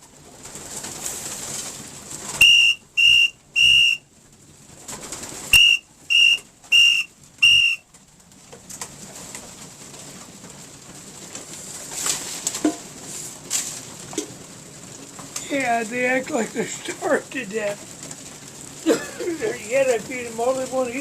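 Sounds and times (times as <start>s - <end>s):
short high whistle blasts: 2.4s - 4.0s, 5.5s - 7.8s.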